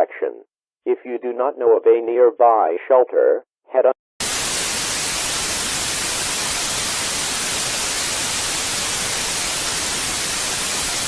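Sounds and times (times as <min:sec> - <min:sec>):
broadcast static hiss: 0:04.2 - 0:11.0.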